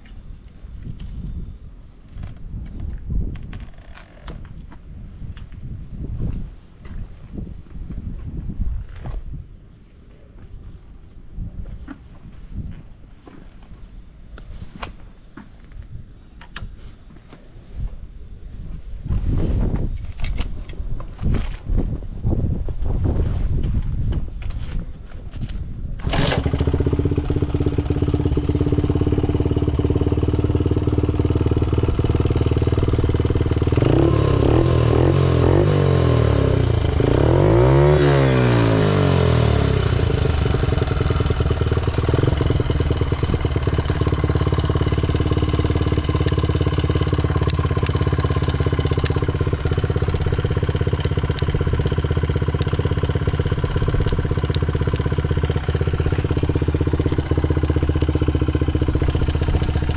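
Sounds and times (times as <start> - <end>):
small engine idling and revving: 26.0 - 59.9.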